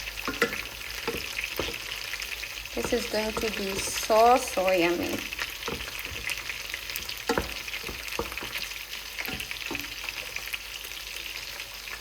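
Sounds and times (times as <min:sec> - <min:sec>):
sauce sizzling in a pan: 0:00.0 - 0:12.0
utensil knocking against pan: 0:00.3 - 0:02.0, 0:02.8 - 0:04.5, 0:05.1 - 0:06.4, 0:07.3 - 0:08.6, 0:09.3 - 0:09.9.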